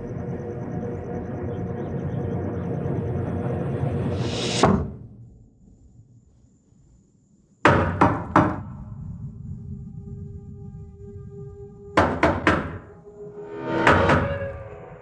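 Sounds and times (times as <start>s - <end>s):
low musical drone: 0.0s - 4.6s, 9.0s - 15.0s
knocks on a door: 7.7s - 8.6s, 12.0s - 12.8s.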